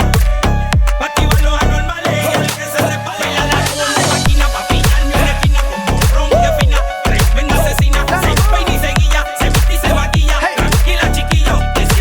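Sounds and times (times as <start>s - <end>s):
hip-hop music: 0.0s - 12.0s.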